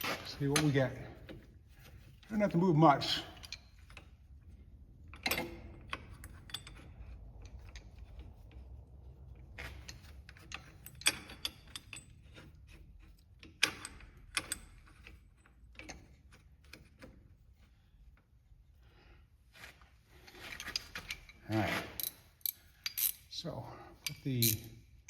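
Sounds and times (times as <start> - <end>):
metal tools clinking: 0.0 - 1.2.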